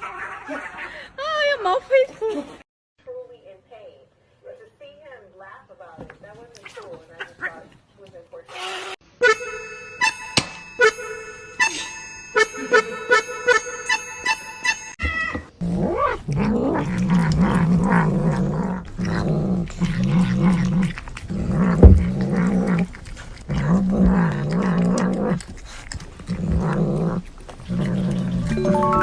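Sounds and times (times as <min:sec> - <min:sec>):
cat growling: 0:15.6 - 0:28.9
sharp thump: 0:21.8 - 0:22.2.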